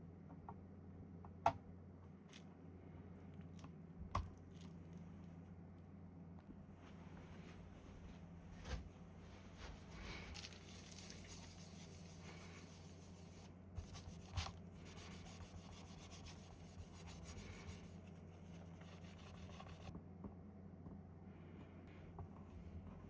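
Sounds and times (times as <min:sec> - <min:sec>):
faint rubbing and handling: 0:06.8 - 0:19.9.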